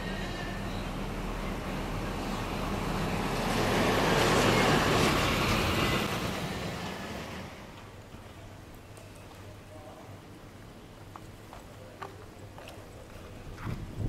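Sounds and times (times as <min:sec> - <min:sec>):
vehicle passing by: 0:00.0 - 0:07.7.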